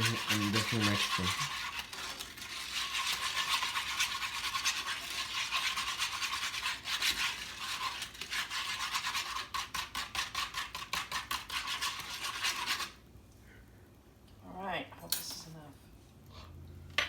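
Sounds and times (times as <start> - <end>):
fork beating eggs in a bowl: 0.0 - 13.0.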